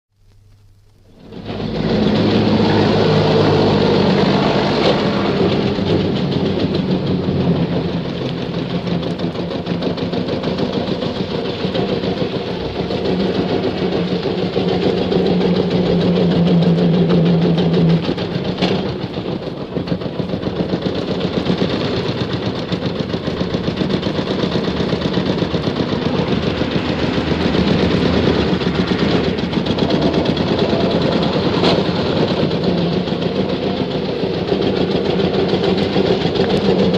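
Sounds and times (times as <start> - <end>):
car engine running: 0.5 - 36.9.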